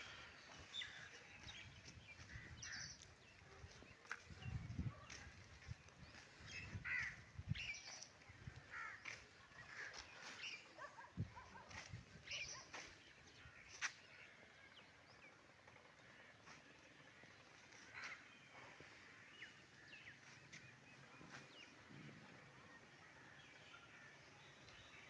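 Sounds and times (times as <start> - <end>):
birds chirping: 0.0 - 25.0.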